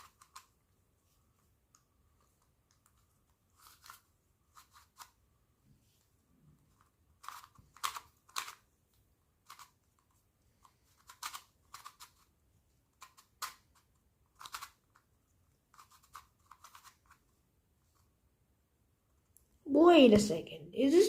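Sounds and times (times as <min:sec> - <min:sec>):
plastic puzzle clicking and scraping: 0:00.0 - 0:00.6, 0:02.2 - 0:05.2, 0:06.6 - 0:17.3.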